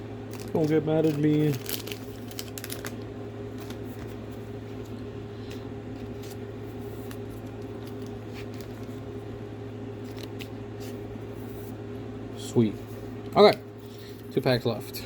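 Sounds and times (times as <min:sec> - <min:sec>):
low room hum: 0:00.0 - 0:15.0
cards rustling into plastic sleeves: 0:00.3 - 0:09.2, 0:10.0 - 0:11.7.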